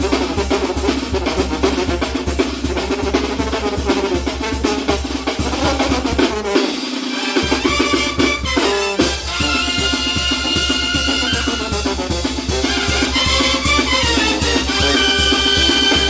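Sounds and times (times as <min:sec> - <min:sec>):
brass band music: 0:00.0 - 0:16.0
drum kit beat: 0:00.0 - 0:16.0.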